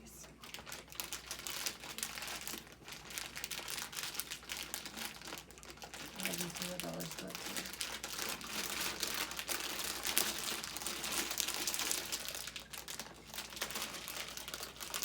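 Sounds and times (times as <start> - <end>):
candy package crinkling: 0.3 - 15.0.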